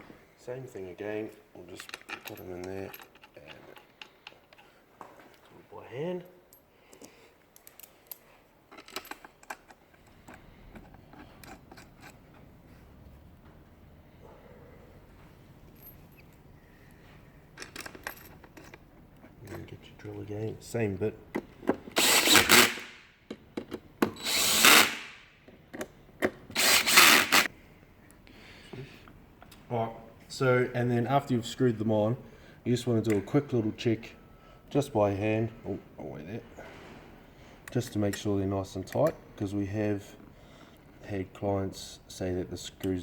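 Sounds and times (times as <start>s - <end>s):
power drill driving screws: 22.0s - 23.0s, 24.2s - 25.2s, 26.5s - 27.5s.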